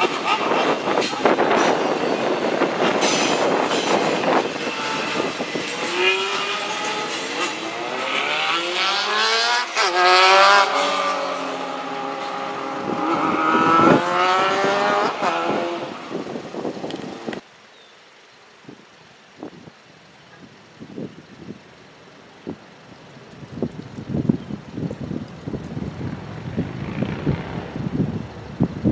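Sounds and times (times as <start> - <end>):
train cars rattling and clacking: 0.0 - 5.9
engine revving up and down: 2.6 - 16.2, 26.0 - 28.1.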